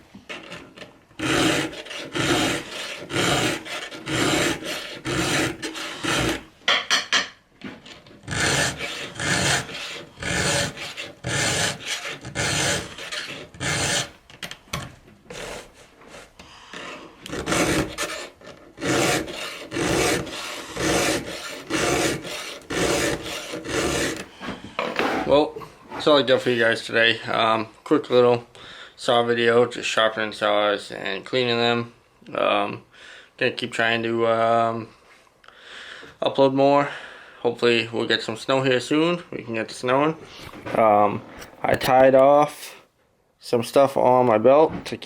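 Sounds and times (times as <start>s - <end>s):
file rasping on chainsaw chain: 1.2s - 6.5s, 8.3s - 14.2s, 15.3s - 24.3s.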